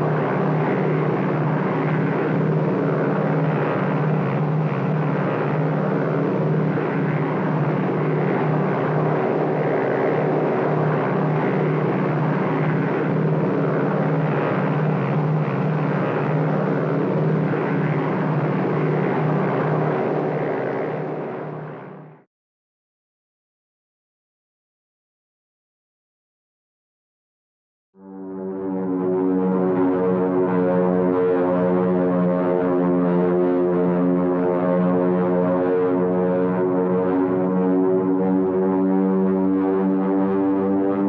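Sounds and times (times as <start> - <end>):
propeller aircraft engines droning: 0.0 - 22.1, 28.3 - 41.0.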